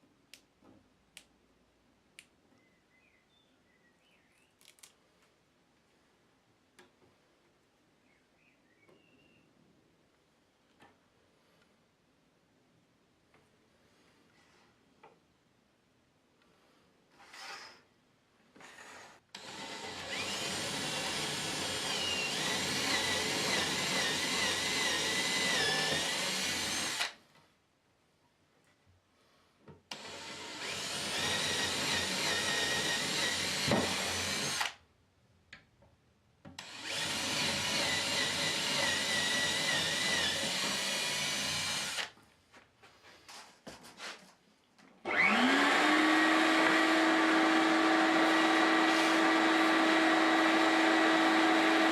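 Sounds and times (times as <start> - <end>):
electric power tool running: 19.4 - 27.2, 36.6 - 42.1, 45.1 - 51.9.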